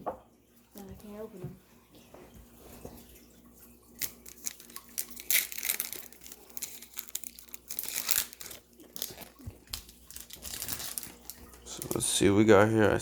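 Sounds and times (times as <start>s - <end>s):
plastic wrapper tearing and crinkling: 4.0s - 12.2s.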